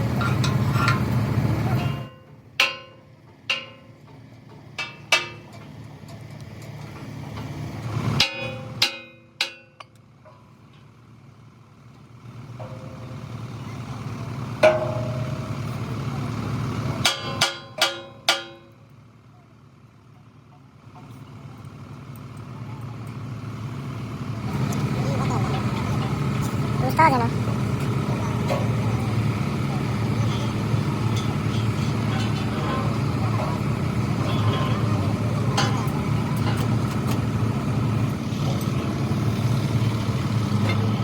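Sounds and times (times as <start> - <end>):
metal clanks on steel: 0.0 - 7.5, 8.1 - 10.9, 12.6 - 13.4, 14.6 - 15.7, 17.0 - 18.8, 27.7 - 37.4
engine-like hum: 0.0 - 41.0.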